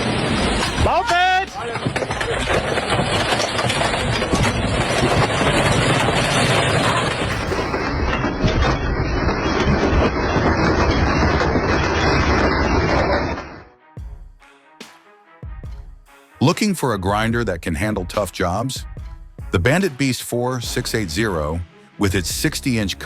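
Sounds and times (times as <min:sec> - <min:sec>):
heavy machinery rumbling: 0:00.0 - 0:13.7.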